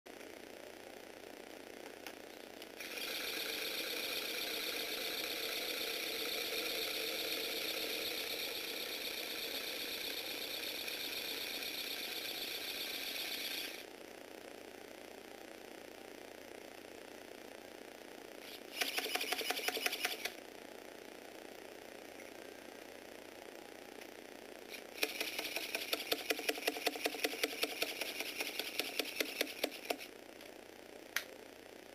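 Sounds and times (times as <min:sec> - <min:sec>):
small electric motor whirring: 0:02.8 - 0:13.9, 0:18.4 - 0:20.4, 0:24.7 - 0:30.1
plastic gears clicking: 0:25.0 - 0:30.1.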